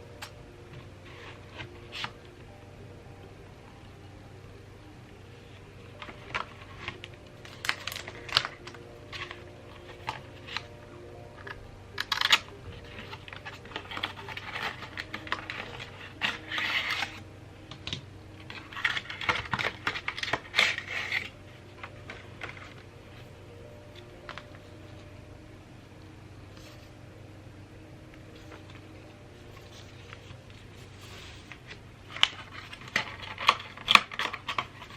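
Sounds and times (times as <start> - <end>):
crinkly packaging rustling: 5.5 - 25.2, 28.2 - 34.9.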